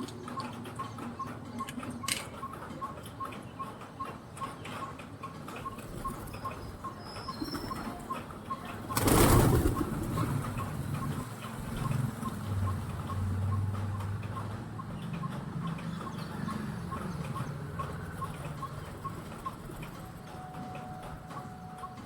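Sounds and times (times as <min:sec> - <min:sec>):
pigeons cooing: 0:05.5 - 0:22.0
wings fluttering: 0:05.6 - 0:13.3, 0:15.6 - 0:22.0
faint even ticking: 0:09.7 - 0:22.0.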